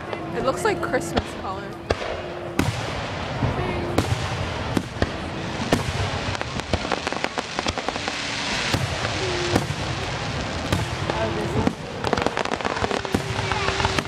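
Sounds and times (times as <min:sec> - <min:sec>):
fireworks bangs: 0:00.0 - 0:14.0
fireworks crackling: 0:00.0 - 0:14.0.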